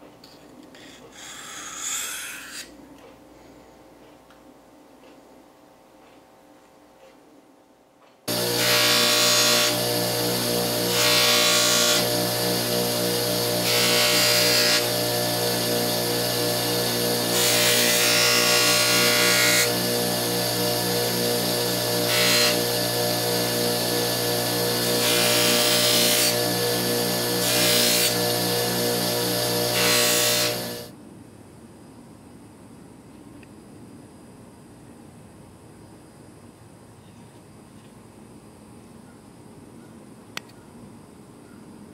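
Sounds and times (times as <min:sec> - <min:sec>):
metal grinding on wheel: 0:08.3 - 0:30.9
power tool motor running: 0:08.3 - 0:30.9.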